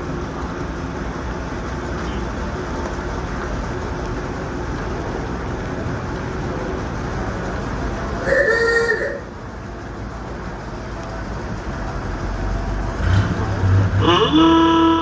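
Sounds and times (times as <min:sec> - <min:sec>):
car engines running: 0:00.0 - 0:15.0.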